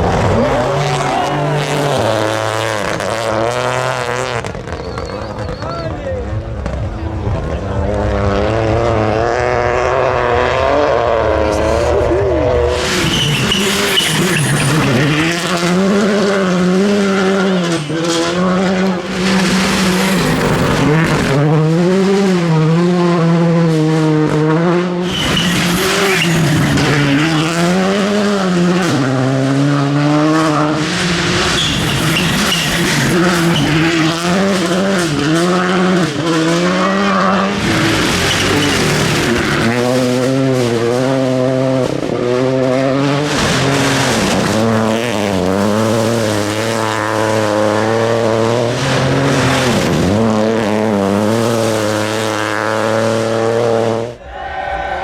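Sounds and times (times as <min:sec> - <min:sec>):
rally car engines revving: 0:00.0 - 0:54.2
tyres sliding on gravel: 0:12.8 - 0:21.4, 0:25.1 - 0:27.4.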